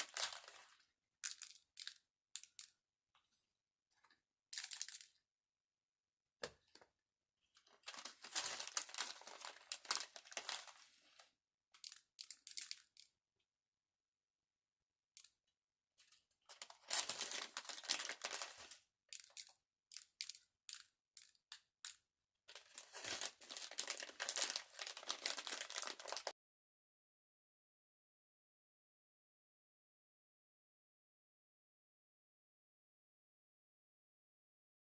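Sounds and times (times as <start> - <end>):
plastic packaging crinkling: 0.0 - 1.9, 7.7 - 11.2, 16.5 - 19.5, 22.5 - 26.3.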